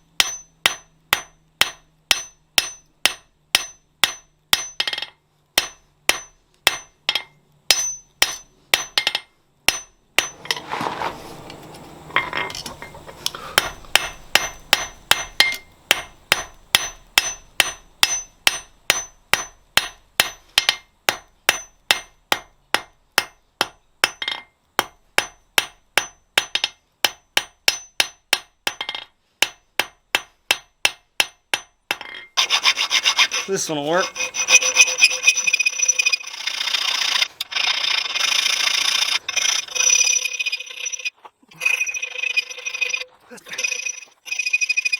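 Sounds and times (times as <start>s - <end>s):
hammer striking steel on anvil: 0.2s - 10.6s, 13.5s - 35.6s.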